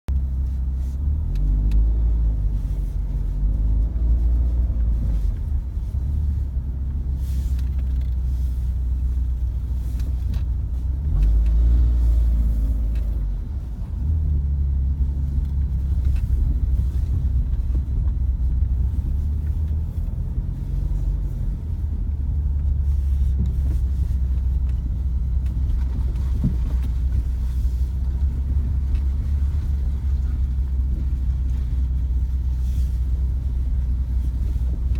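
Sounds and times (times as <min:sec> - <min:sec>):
road and engine rumble: 0:00.0 - 0:34.9.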